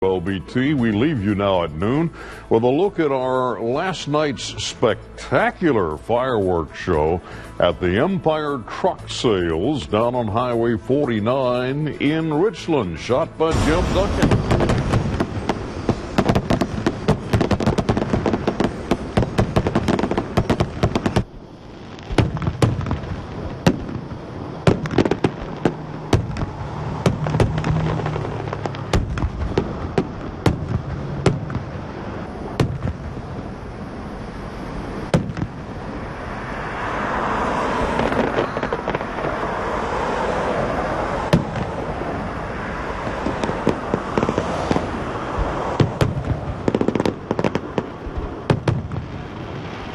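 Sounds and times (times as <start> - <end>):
fireworks bangs and crackles: 0.0 - 49.9.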